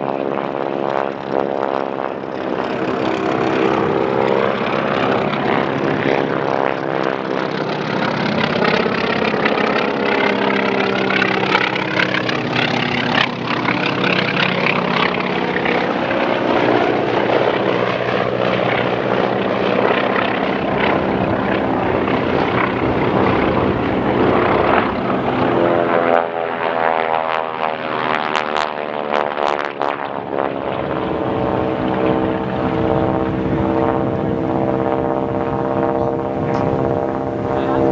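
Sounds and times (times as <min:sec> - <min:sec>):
propeller planes flying past: 0:00.0 - 0:37.9.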